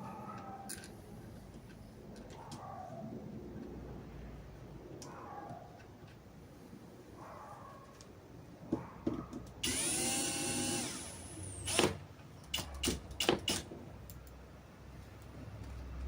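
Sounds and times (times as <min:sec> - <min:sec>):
cordless drill running: 0:09.6 - 0:12.0.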